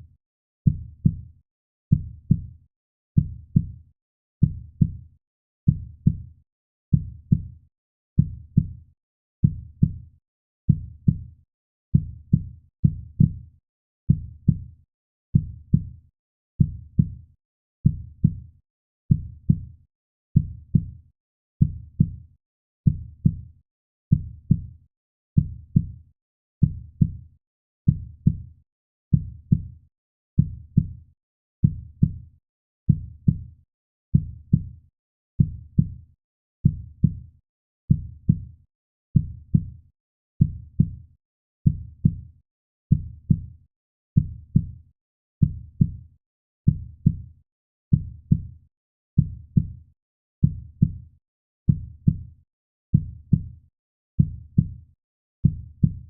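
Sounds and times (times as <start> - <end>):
heartbeat: 1.9 - 2.5, 45.4 - 45.9, 49.2 - 49.7, 53.0 - 53.4, 54.2 - 54.8, 55.4 - 56.0.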